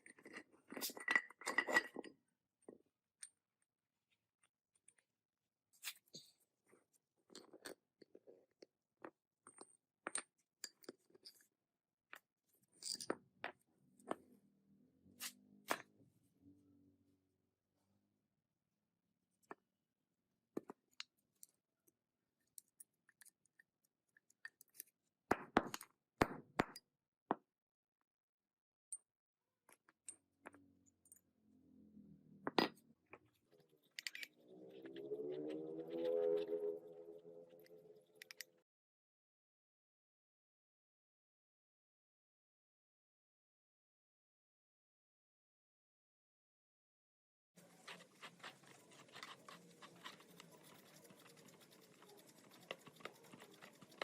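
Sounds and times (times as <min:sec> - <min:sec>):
small parts clicking and scraping: 0:00.0 - 0:02.2, 0:12.6 - 0:13.2, 0:22.4 - 0:25.1, 0:32.7 - 0:35.0, 0:37.5 - 0:38.5, 0:47.6 - 0:54.0.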